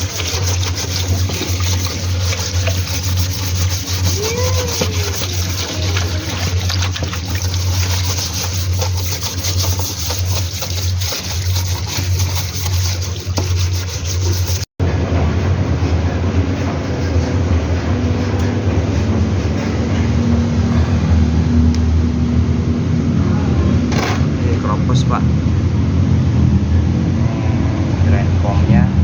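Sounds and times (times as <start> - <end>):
washing machine churning: 0.0 - 23.1.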